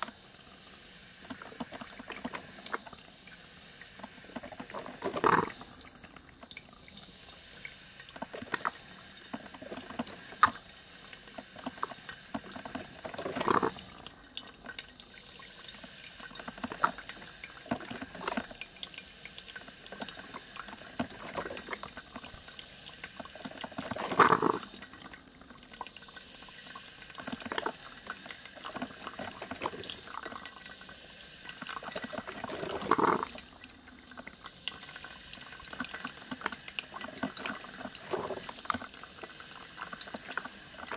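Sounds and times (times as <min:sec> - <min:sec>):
coffee machine gurgling and spurting: 0:00.0 - 0:40.9.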